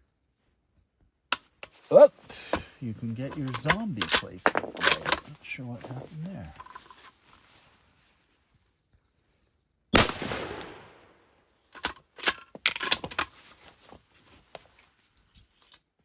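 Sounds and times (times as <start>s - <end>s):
rifle bolt metallic clicks: 3.3s - 5.2s
rifle shot: 10.0s - 11.2s.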